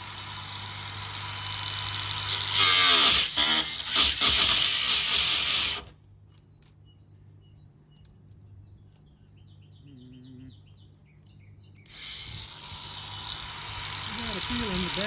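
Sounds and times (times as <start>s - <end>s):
power tool cutting sheet metal: 0.0s - 5.9s, 11.9s - 15.0s
birds chirping: 6.2s - 12.5s.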